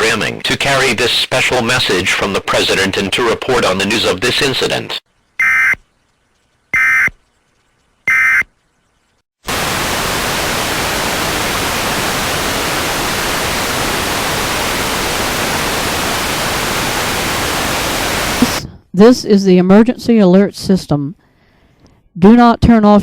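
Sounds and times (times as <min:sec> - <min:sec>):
loud static hiss: 0:09.4 - 0:18.6.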